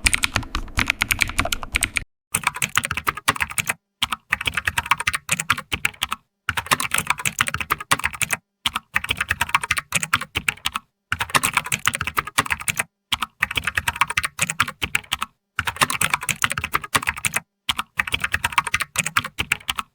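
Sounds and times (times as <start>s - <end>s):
keyboard typing clicks: 0.0s - 19.9s.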